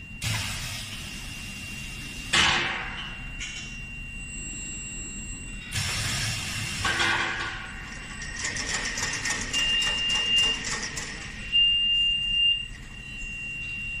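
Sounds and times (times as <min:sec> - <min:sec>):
machine high whine: 0:00.0 - 0:14.0
hiss: 0:05.7 - 0:07.0.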